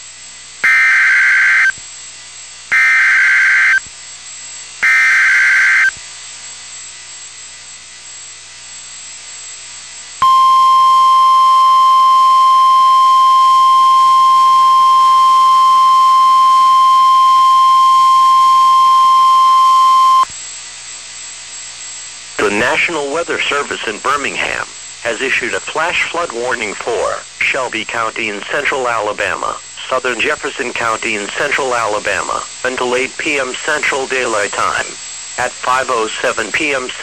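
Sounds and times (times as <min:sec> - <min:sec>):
buzzy digital data bursts: 0:00.6 - 0:01.8, 0:02.7 - 0:03.8, 0:04.8 - 0:06.0, 0:10.3 - 0:20.3
continuous warning alarm tone: 0:00.6 - 0:01.8, 0:02.7 - 0:03.9, 0:04.8 - 0:06.0, 0:10.2 - 0:20.3.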